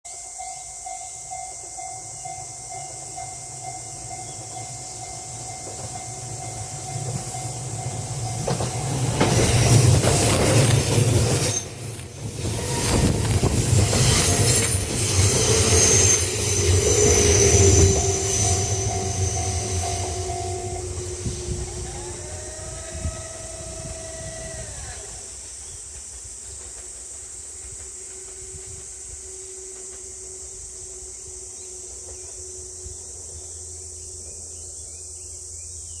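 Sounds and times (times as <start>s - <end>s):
electric train passing on rails: 0.1s - 36.0s
high hiss: 4.8s - 35.1s
brief gliding tones: 12.4s - 23.5s.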